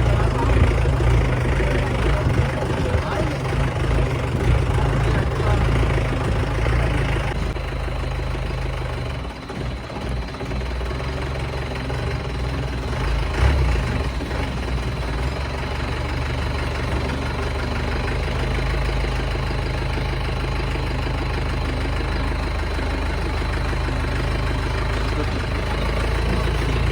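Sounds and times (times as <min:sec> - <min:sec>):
vehicle engine running: 0:00.0 - 0:26.9.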